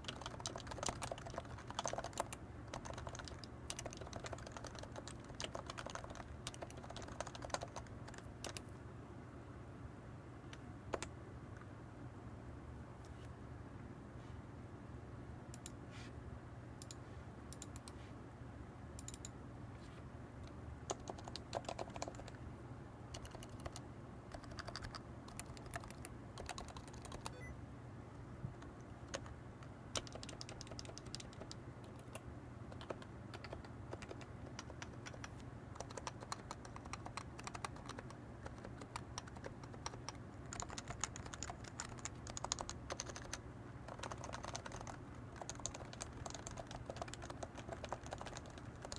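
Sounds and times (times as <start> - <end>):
soft keyboard keystrokes: 0.0 - 8.8, 10.5 - 11.1, 20.9 - 22.4, 23.1 - 27.5, 30.0 - 48.9.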